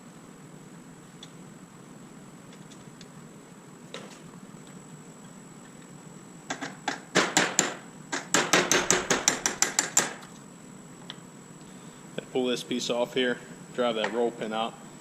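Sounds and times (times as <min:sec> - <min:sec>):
hammer striking metal: 0:08.4 - 0:10.1.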